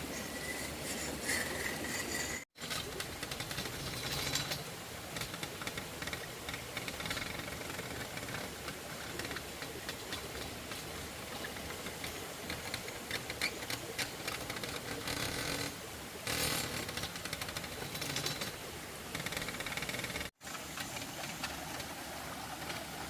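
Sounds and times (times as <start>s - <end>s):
small engine machine rattling: 0.1s - 22.0s.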